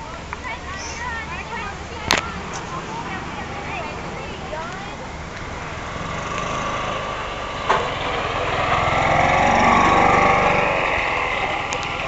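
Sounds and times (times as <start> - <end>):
small engine running: 3.1 - 12.0.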